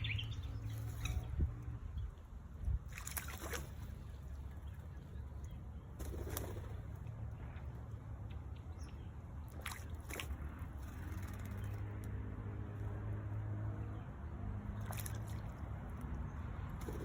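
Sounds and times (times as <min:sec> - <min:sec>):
low steady rumble: 0:00.0 - 0:17.0
bird wing flaps: 0:06.0 - 0:06.8.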